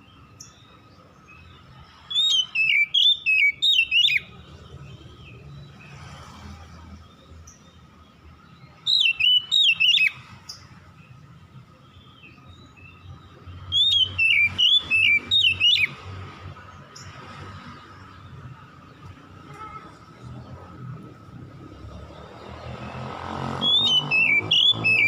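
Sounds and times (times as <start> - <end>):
songbird whistling song: 0.0 - 5.7, 8.4 - 11.2, 11.8 - 16.2, 22.9 - 25.0.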